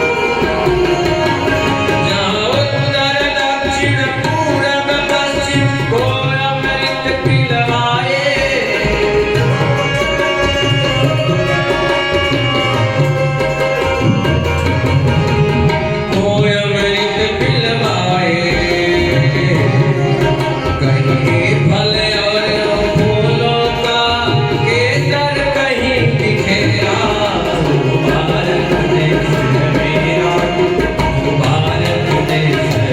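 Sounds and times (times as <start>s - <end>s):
tabla rhythm: 0.0s - 32.9s.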